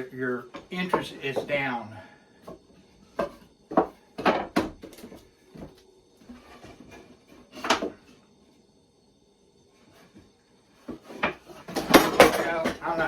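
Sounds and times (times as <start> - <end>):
wooden parts knocking and clattering: 3.2 - 5.2, 7.6 - 8.0, 10.9 - 13.0.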